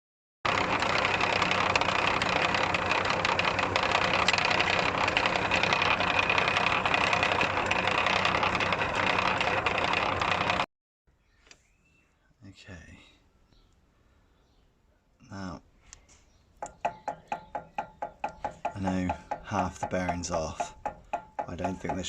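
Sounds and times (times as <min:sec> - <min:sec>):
rattle from drive shaft: 0:00.5 - 0:10.7, 0:16.6 - 0:22.0
tractor engine running: 0:00.5 - 0:10.7, 0:16.6 - 0:22.0.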